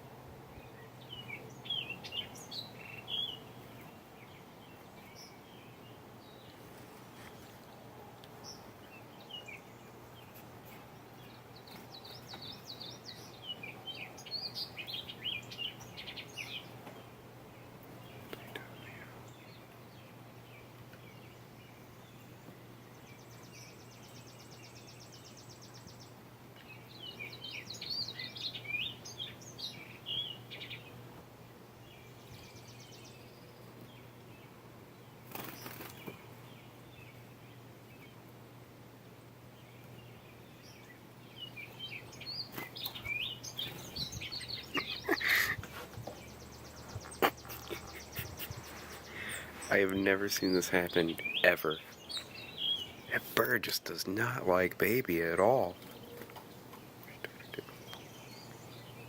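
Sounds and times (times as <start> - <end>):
small bird chirping: 8.4 - 31.0, 39.5 - 53.6, 54.8 - 59.0
steady low hum: 25.4 - 59.0.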